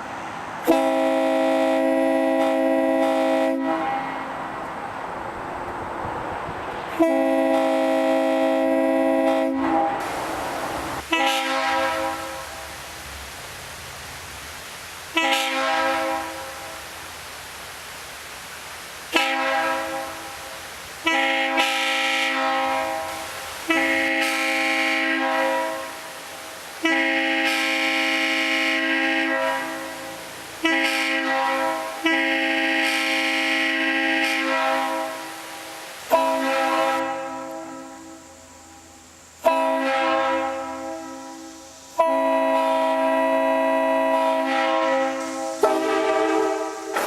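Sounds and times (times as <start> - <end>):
locomotive air horn blasts: 0.6 - 4.4, 6.9 - 10.2, 11.0 - 12.6, 15.1 - 16.8, 19.1 - 20.4, 21.0 - 26.1, 26.8 - 35.4, 36.1 - 38.3, 39.4 - 47.0.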